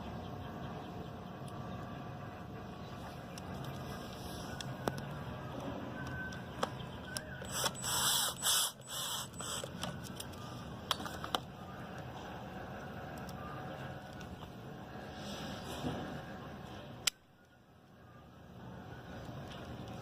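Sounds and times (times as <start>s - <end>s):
low steady hum: 0.0s - 20.0s
sharp mechanical clicks: 6.3s - 10.2s.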